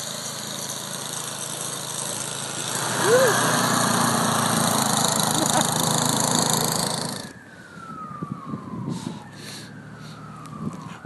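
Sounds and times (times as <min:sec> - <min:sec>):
small engine running: 0:00.0 - 0:07.4.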